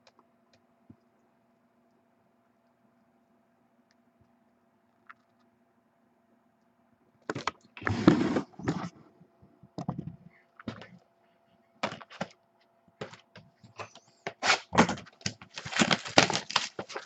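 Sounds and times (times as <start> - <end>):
card packs crinkling and tearing: 13.8 - 17.0.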